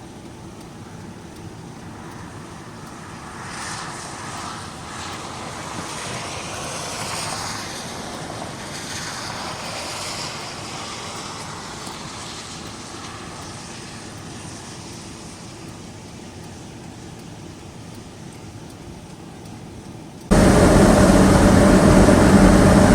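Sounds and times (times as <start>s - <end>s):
steady rushing noise: 20.3s - 22.9s.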